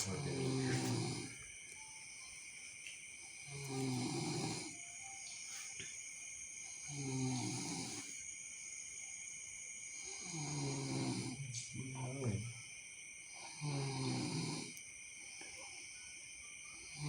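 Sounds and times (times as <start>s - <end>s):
person snoring: 0.0s - 1.4s, 3.5s - 4.8s, 6.8s - 8.2s, 10.0s - 11.5s, 13.4s - 14.8s
quiet breathing: 0.0s - 1.9s, 3.4s - 8.4s.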